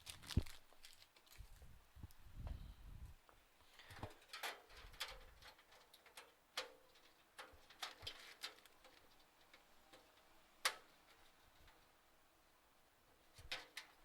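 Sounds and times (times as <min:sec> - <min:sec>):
thin metal clicks and taps: 0:10.6 - 0:11.8.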